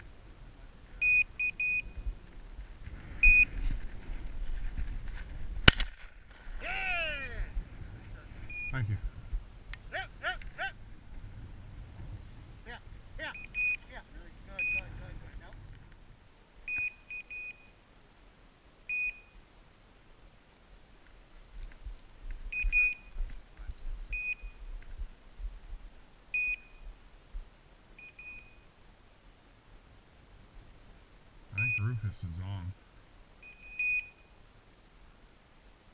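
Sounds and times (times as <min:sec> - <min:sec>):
rustling: 0:01.8 - 0:06.6
low microphone rumble: 0:06.4 - 0:16.2
short high electronic beeps: 0:13.3 - 0:13.8, 0:22.6 - 0:23.2, 0:31.6 - 0:32.0, 0:33.4 - 0:34.3.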